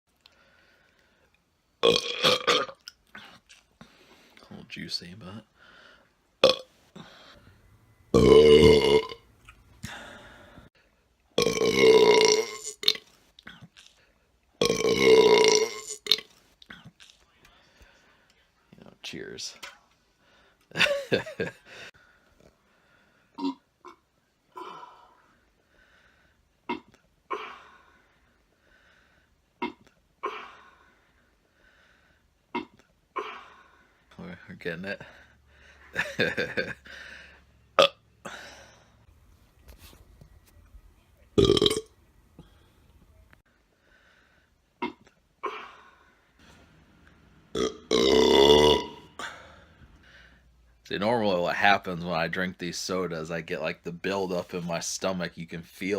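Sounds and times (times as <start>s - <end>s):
low belch: 1.8s - 2.8s, 6.4s - 6.6s, 8.2s - 9.2s, 11.4s - 13.0s, 14.6s - 15.8s, 41.4s - 41.9s, 47.5s - 49.1s
man burping: 1.8s - 2.8s, 6.4s - 6.7s, 8.2s - 9.2s, 11.4s - 13.6s, 14.6s - 16.9s, 23.4s - 24.0s, 26.7s - 27.7s, 29.6s - 30.6s, 32.5s - 33.5s, 37.8s - 38.6s, 41.4s - 41.9s, 44.8s - 45.8s, 47.5s - 49.6s.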